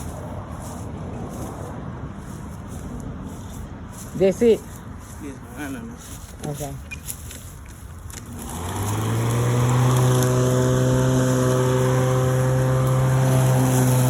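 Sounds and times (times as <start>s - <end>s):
electric lawnmower motor humming: 8.2s - 14.0s.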